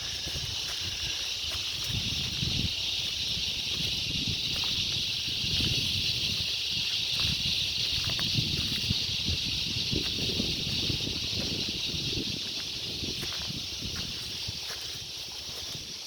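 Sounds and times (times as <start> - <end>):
high-pitched insect chorus: 0.0 - 16.0.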